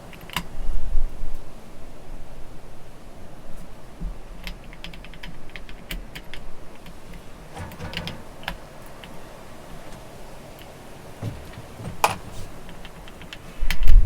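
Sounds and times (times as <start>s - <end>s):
hand tools clinking on metal: 7.1s - 13.5s.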